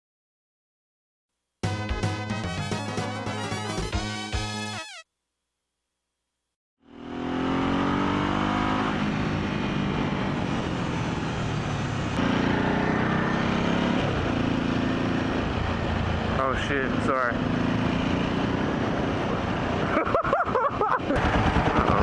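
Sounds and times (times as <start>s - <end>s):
motorcycle engine accelerating: 6.8s - 22.0s
wind noise: 21.1s - 22.0s.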